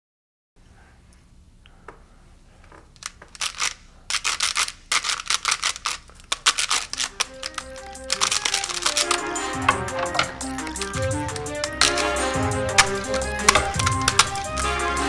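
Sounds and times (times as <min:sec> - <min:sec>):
keypad clicks and knocks: 0:07.0 - 0:14.8
background music: 0:07.1 - 0:15.0.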